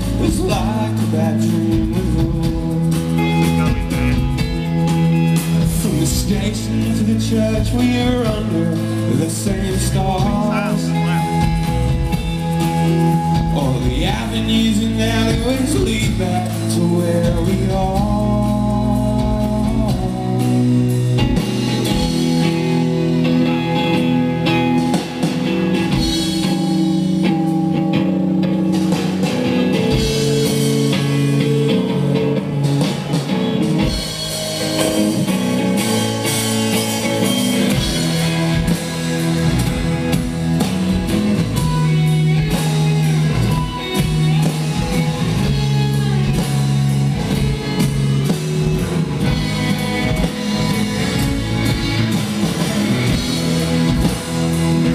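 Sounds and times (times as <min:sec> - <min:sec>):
bass guitar: 0:00.0 - 0:54.9
drum kit beat: 0:00.0 - 0:54.9
electric guitars: 0:00.0 - 0:54.9.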